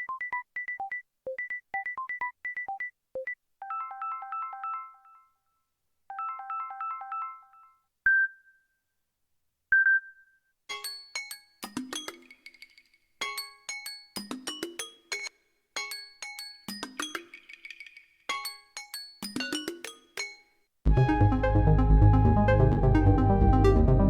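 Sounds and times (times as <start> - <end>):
busy ringtone: 0.0 - 5.4, 6.1 - 8.3.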